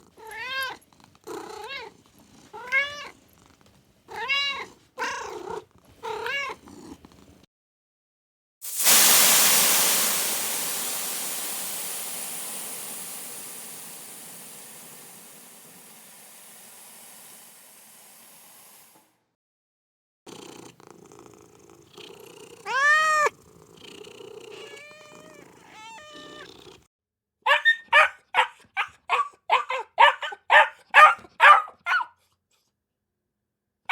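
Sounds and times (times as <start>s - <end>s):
cat meowing: 0.2s - 2.0s, 2.6s - 3.2s, 4.1s - 6.6s, 22.6s - 23.3s, 24.5s - 26.6s
dog yapping: 22.7s - 23.3s, 27.5s - 32.2s.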